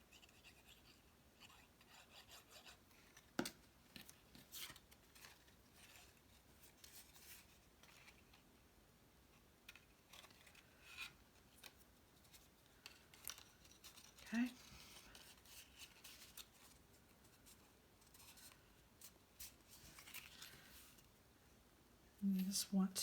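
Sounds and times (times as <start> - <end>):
cardstock rubbing and rustling: 9.7 - 21.0.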